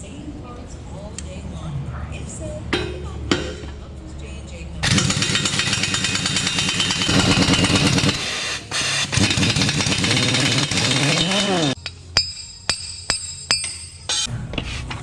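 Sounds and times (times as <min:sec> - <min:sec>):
impact wrench rattling: 0:04.8 - 0:14.3.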